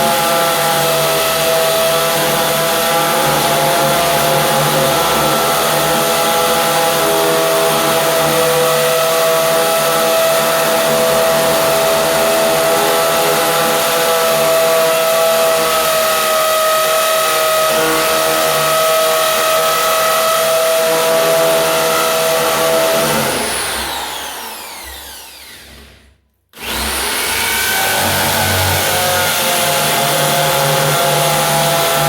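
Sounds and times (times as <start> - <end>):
electric drill drilling into masonry: 0.0 - 32.0.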